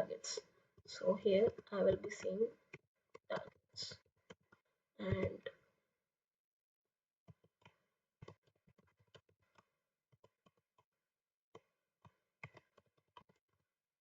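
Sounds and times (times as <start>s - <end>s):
faint keyboard typing: 12.1s - 13.4s.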